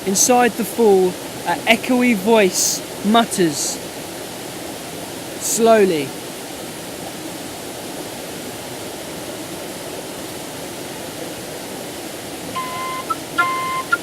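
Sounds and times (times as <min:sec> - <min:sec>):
waterfall rushing: 0:00.0 - 0:14.0
wind instrument playing held notes: 0:12.6 - 0:14.0.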